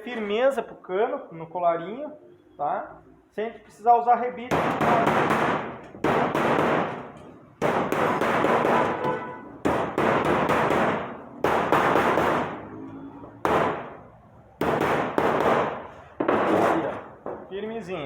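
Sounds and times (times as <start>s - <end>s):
hammer striking sheet metal: 4.5s - 12.7s, 14.6s - 17.1s.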